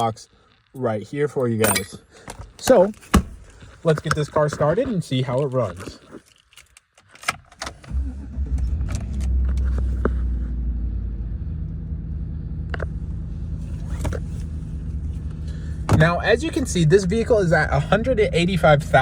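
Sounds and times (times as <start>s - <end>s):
truck engine starting and idling: 7.6s - 19.0s.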